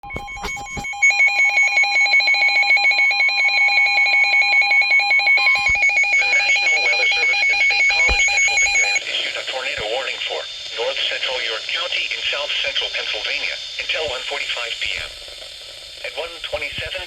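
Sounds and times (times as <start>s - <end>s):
warbling electronic alert tone: 0.0s - 1.5s.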